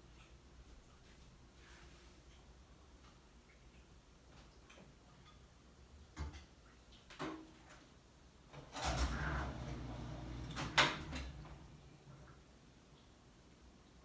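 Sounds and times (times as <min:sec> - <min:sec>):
rustling and shuffling: 0:00.6 - 0:02.3.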